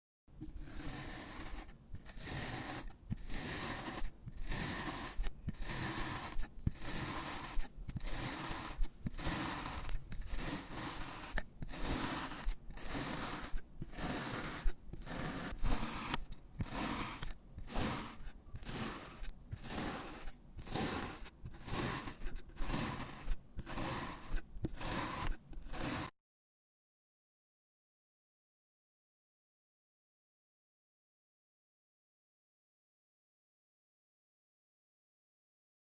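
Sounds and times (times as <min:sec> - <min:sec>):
blade scraping through sand: 0:00.5 - 0:26.1.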